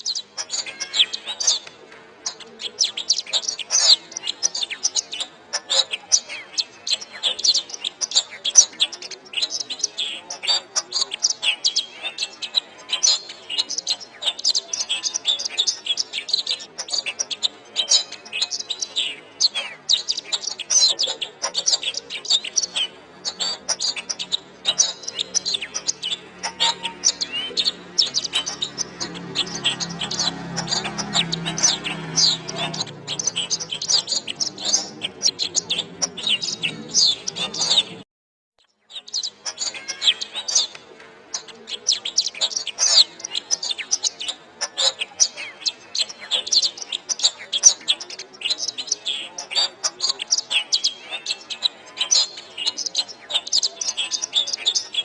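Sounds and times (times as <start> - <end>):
canary singing trills: 0.0 - 38.0, 38.6 - 55.0.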